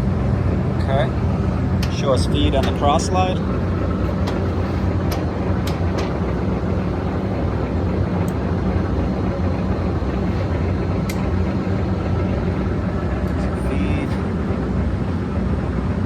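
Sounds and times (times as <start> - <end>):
lathe humming: 0.0 - 16.0.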